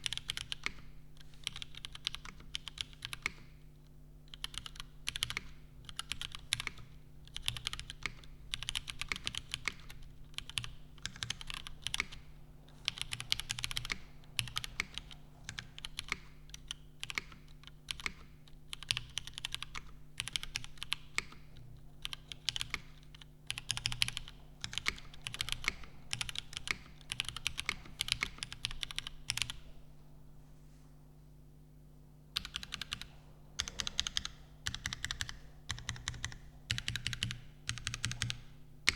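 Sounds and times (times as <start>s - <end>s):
mechanical keyboard typing: 0.0s - 0.8s, 1.4s - 3.5s, 4.3s - 12.2s, 12.8s - 21.4s, 22.0s - 29.6s, 32.4s - 38.9s
faint low hum: 0.0s - 38.9s.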